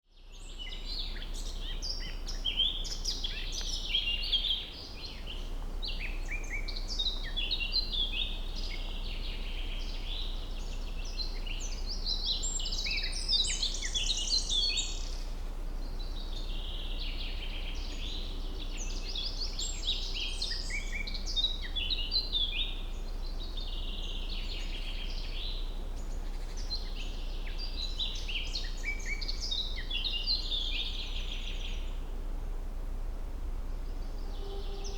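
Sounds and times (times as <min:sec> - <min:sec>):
birds chirping and singing: 0:34.0 - 0:34.9.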